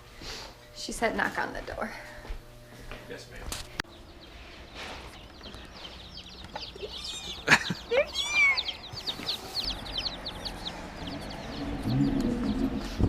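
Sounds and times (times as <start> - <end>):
chicks peeping: 3.8 - 13.0.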